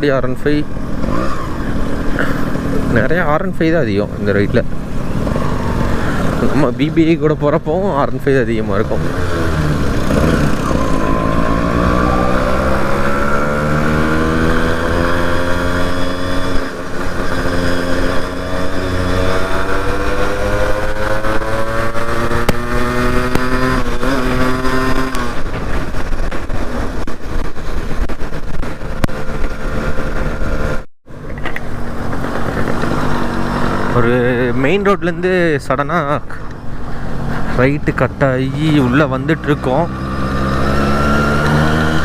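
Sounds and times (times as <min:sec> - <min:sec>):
motorcycle engine accelerating: 0:00.0 - 0:35.2, 0:35.8 - 0:42.0.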